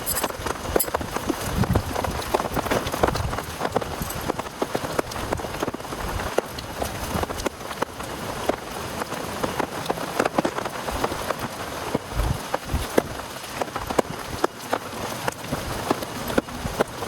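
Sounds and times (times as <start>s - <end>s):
heavy rain: 0.0s - 17.0s
raindrops ticking on a surface: 0.2s - 17.0s.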